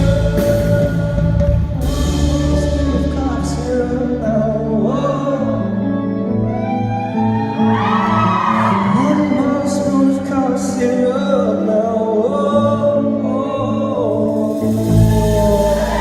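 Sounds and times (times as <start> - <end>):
held instrumental chords: 0.0 - 16.0
man singing: 0.0 - 16.0.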